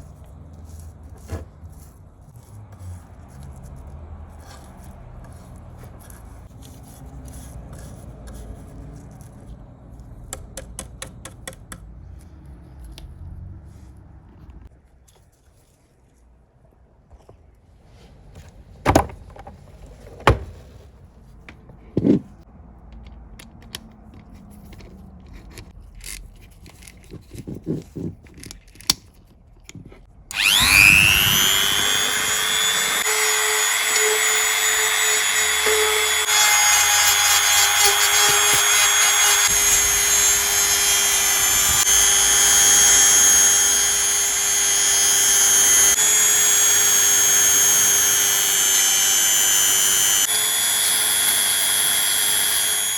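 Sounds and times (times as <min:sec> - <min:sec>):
power tool whining: 0:30.3 - 0:52.9.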